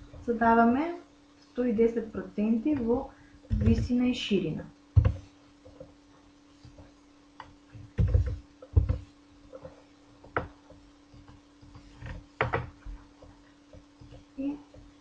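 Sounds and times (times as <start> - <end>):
faint steady hum: 0.0 - 15.0
dull knocks on desk: 5.0 - 5.2, 8.0 - 9.1.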